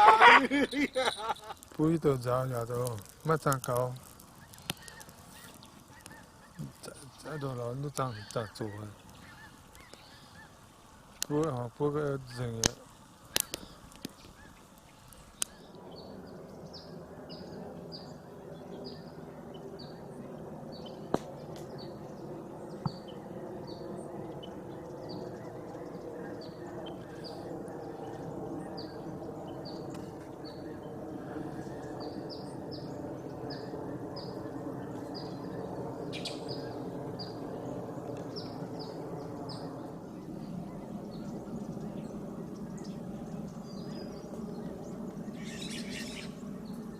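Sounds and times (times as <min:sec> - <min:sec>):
droning hum: 0:00.0 - 0:46.9
sharp clicks: 0:12.6 - 0:14.3.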